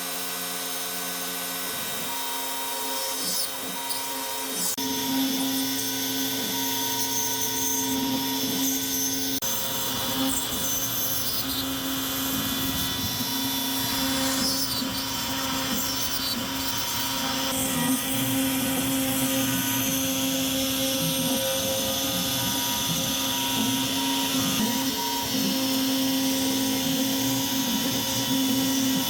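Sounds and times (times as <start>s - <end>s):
power tool motor whining: 0.0s - 29.0s.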